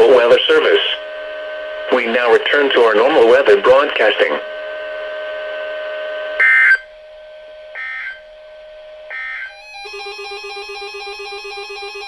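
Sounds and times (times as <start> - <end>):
warbling electronic tone: 6.3 - 7.0, 7.6 - 12.0
screeching digital data bursts: 6.4 - 6.9, 7.7 - 8.2, 9.1 - 12.0.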